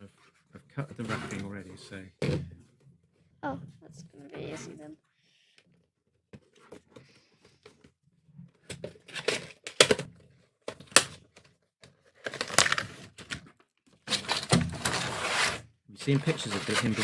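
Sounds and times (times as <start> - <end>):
crinkling and tearing rustles: 12.0 - 17.0
packaging clicking: 12.2 - 12.8.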